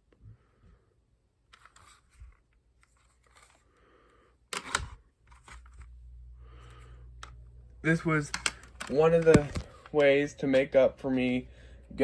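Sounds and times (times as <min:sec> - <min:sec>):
low steady hum: 0:00.0 - 0:12.0
clicks and rustling of handling: 0:08.0 - 0:10.8.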